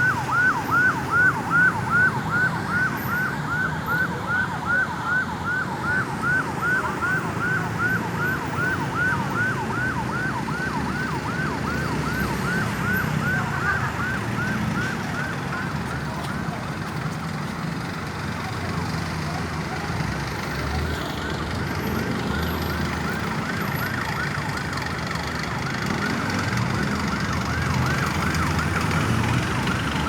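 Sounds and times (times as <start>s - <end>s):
ambulance siren yelping: 0.0s - 17.1s, 18.0s - 30.0s
low rumble of road traffic: 0.0s - 30.0s.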